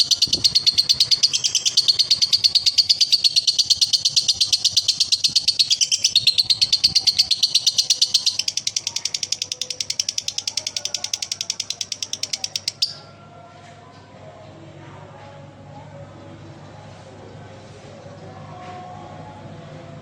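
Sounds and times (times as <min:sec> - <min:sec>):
bird rattling trill: 0:00.0 - 0:13.0.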